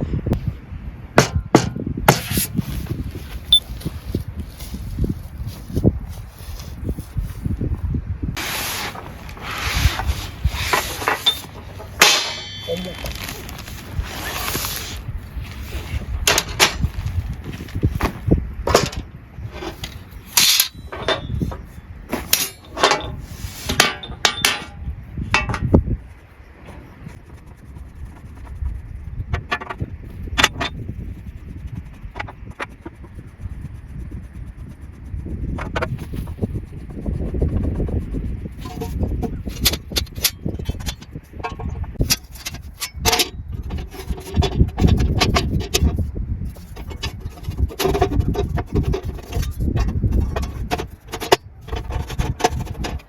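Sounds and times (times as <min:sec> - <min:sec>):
wind rumble on microphone: 0:00.0 - 0:53.0
knocks clacks and rustling: 0:08.8 - 0:14.9, 0:15.8 - 0:24.8, 0:38.5 - 0:53.0.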